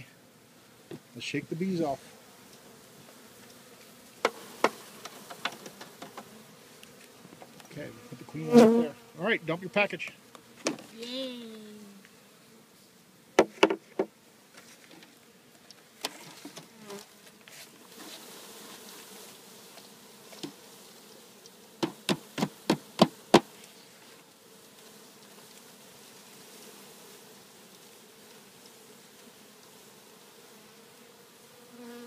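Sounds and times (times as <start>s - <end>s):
bees buzzing: 0.0s - 32.0s
box being banged: 21.8s - 23.5s.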